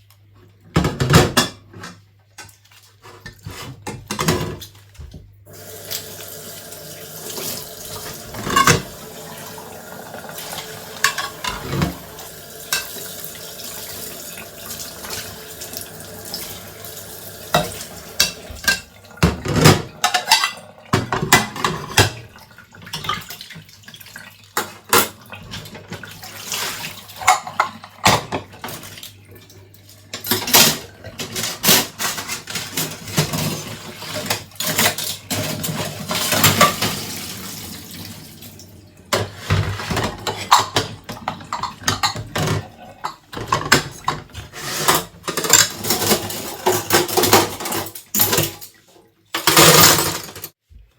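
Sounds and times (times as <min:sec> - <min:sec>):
tap water running: 0:02.3 - 0:50.9
plates and cutlery clinking: 0:08.3 - 0:08.9, 0:10.6 - 0:12.0, 0:17.5 - 0:22.2, 0:30.2 - 0:37.0, 0:39.1 - 0:48.7.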